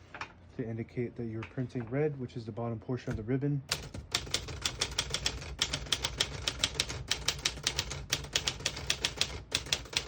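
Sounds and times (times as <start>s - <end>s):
manual typewriter typing: 3.7s - 10.0s.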